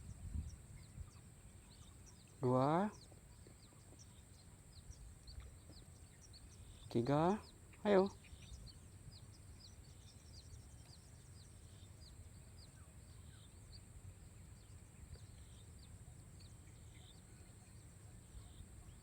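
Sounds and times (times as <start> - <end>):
high falling bird chirps: 0.0 - 13.8.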